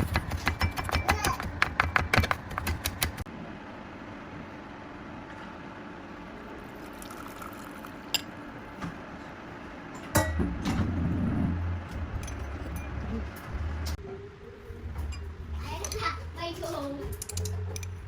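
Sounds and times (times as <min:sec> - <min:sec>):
liquid pouring into glass: 0:06.8 - 0:08.0.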